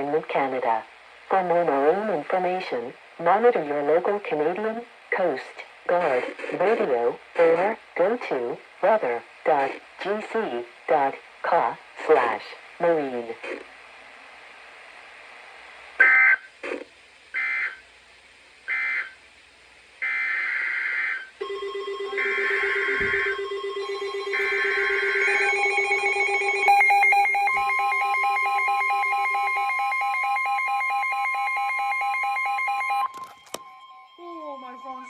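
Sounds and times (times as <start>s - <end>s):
steady alert tones: 21.4s - 29.8s.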